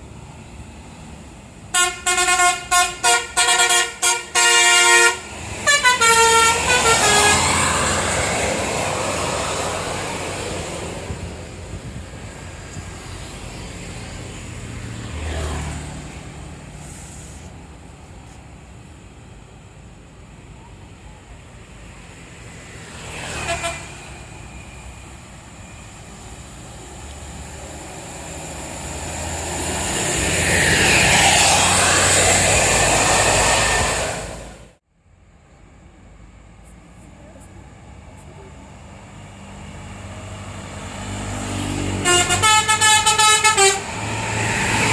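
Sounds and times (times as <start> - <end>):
heavy vehicle passing: 0.0 - 18.6, 22.1 - 34.8, 37.8 - 44.9
vehicles passing on road: 0.0 - 44.9.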